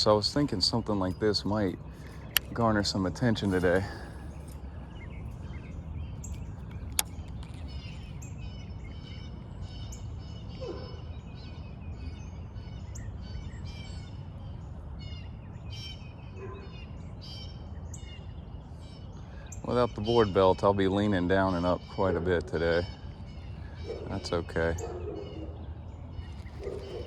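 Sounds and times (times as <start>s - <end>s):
sharp click: 6.3s - 7.8s.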